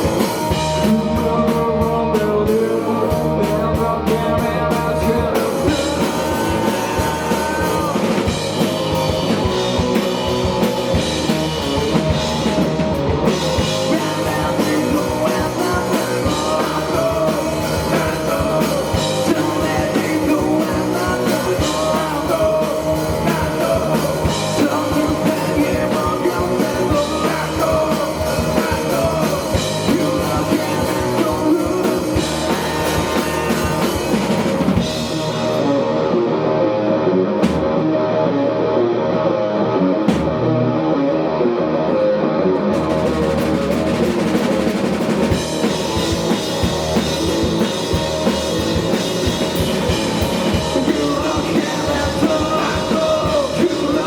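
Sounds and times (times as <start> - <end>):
person singing: 0.0 - 9.4, 13.3 - 36.3, 49.9 - 54.0
rock band playing live: 0.0 - 54.0.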